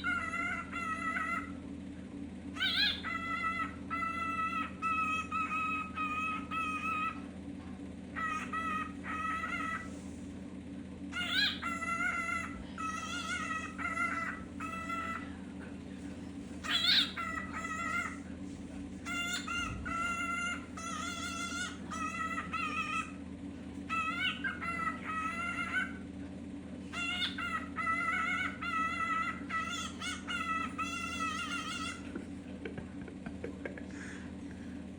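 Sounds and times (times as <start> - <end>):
cockatiel squawks: 0.0 - 1.6, 2.6 - 7.2, 8.2 - 9.9, 11.1 - 15.3, 16.6 - 18.2, 19.0 - 23.2, 23.9 - 26.0, 26.9 - 32.1
steady low hum: 0.0 - 34.9.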